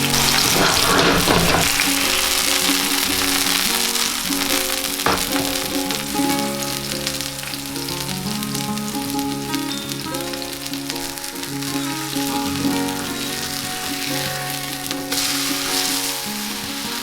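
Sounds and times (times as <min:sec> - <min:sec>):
food sizzling in frying pan: 0:00.0 - 0:17.0
plucked ukulele tune: 0:00.0 - 0:17.0
knock: 0:05.0 - 0:06.1.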